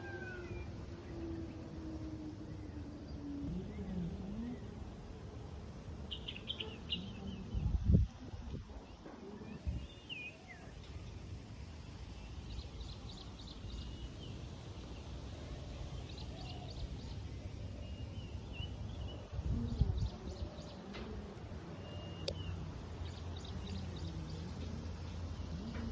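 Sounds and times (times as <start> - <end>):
low outdoor rumble: 0.0 - 25.9
birds chirping: 6.0 - 7.9, 8.8 - 25.9.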